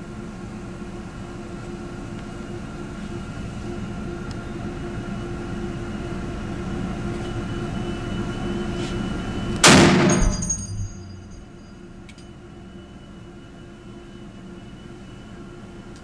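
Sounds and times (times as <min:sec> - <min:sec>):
rifle shot: 0:09.6 - 0:10.6.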